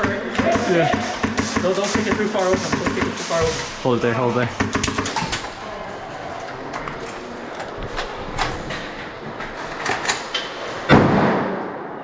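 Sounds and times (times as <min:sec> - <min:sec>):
airsoft gun shots: 0:00.0 - 0:03.7, 0:04.6 - 0:05.6.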